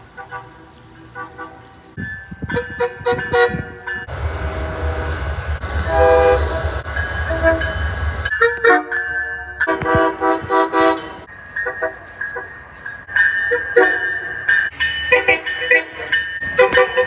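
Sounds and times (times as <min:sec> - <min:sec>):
passing train rumble: 0:00.0 - 0:08.4
locomotive horn blasts: 0:02.5 - 0:08.3.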